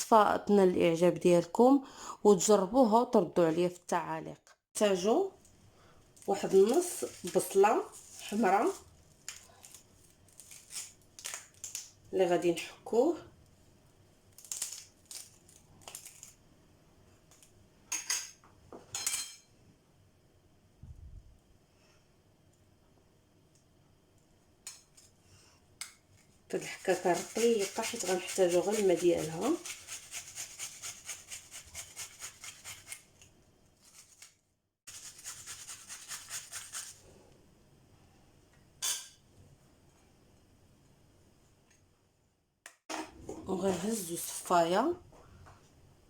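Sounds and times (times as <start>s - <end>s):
onion rasped on metal grater: 26.5s - 33.1s, 34.9s - 37.0s.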